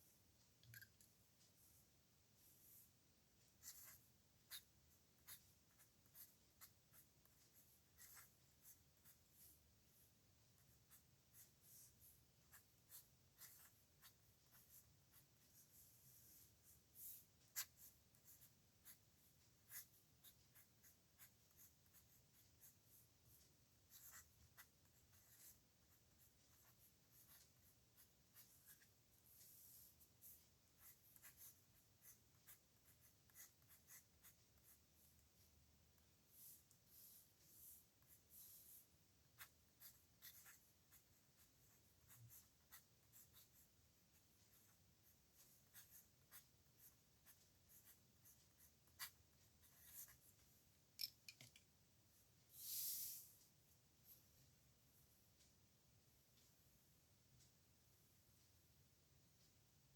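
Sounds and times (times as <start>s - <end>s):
pen scratching on paper: 3.5s - 35.4s, 36.0s - 50.4s.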